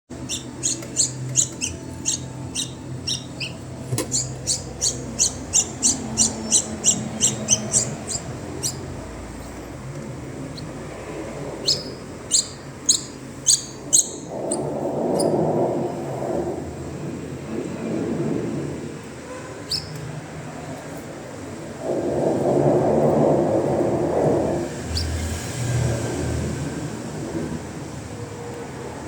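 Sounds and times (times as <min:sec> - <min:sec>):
low rumbling noise: 0:00.1 - 0:29.0
small bird chirping: 0:00.2 - 0:09.6, 0:10.4 - 0:10.8, 0:11.6 - 0:15.4, 0:19.6 - 0:20.0, 0:24.9 - 0:25.3.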